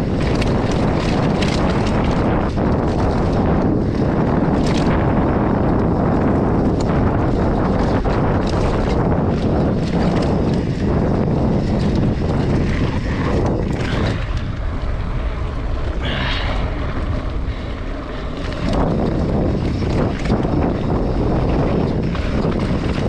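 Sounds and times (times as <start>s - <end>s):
constant low rumble: 0.0s - 23.0s
wind buffeting microphone: 0.0s - 23.0s.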